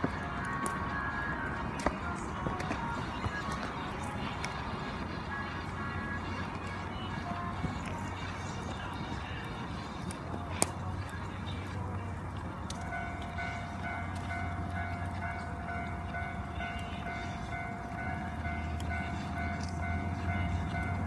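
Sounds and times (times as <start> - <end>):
bamboo crackling in fire: 0.0 - 21.0
low rumble of fire: 0.0 - 21.0.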